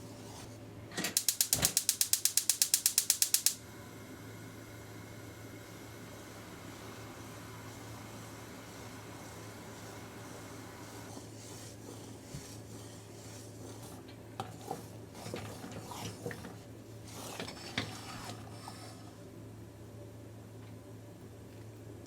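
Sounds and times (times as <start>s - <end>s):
steady low hum: 0.0s - 14.2s
utensil scraping a dish: 10.9s - 19.2s.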